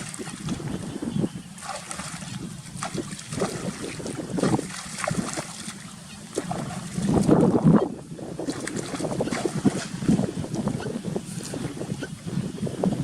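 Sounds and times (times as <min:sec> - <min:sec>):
water splashing and sloshing: 0:00.0 - 0:13.0
wind buffeting microphone: 0:00.0 - 0:13.0.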